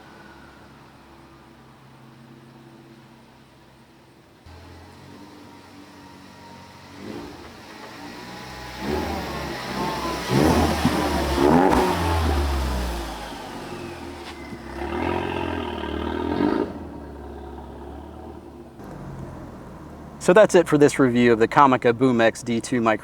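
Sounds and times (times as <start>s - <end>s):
car accelerating past: 4.4s - 21.6s.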